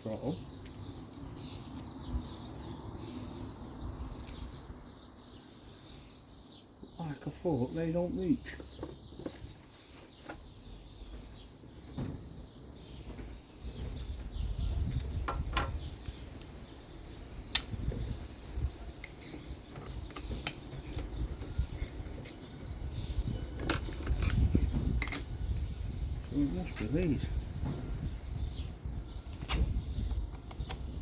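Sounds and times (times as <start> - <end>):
small metallic clicks and taps: 23.6 - 25.3.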